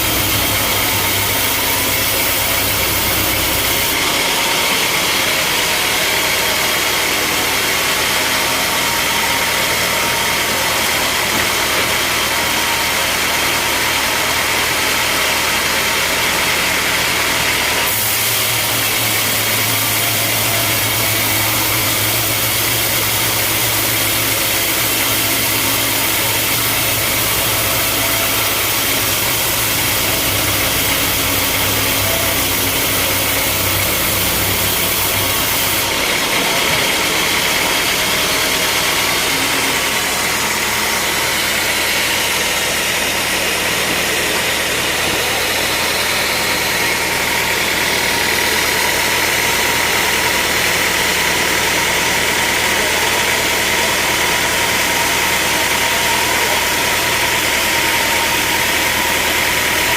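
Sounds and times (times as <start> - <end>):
sawmill machinery engine hum: 0.0 - 59.9
loud hiss: 17.9 - 36.1.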